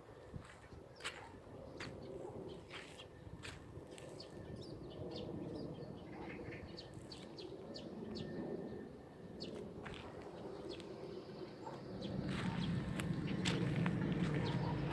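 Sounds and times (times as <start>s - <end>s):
small birds chirping: 0.3s - 8.8s.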